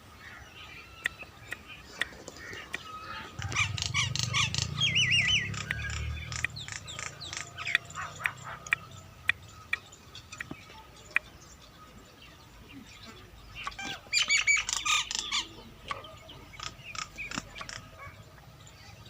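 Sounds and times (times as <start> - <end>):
birds squawking and chirping: 0.0 - 19.0
bird warbling call: 0.3 - 11.3, 13.0 - 18.3
low rumble: 3.3 - 8.2.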